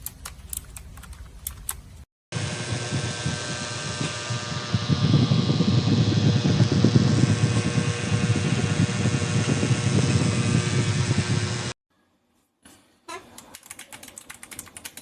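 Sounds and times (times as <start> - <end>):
fast mechanical keyboard typing: 0.0 - 1.8, 13.5 - 15.0.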